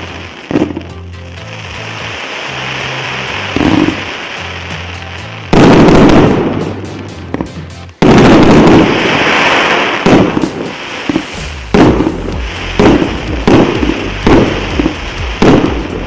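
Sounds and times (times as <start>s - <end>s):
sharp firework pops: 0.0s - 0.9s, 3.5s - 4.3s, 5.5s - 16.0s
background music: 0.0s - 16.0s
fireworks bursts: 0.0s - 16.0s.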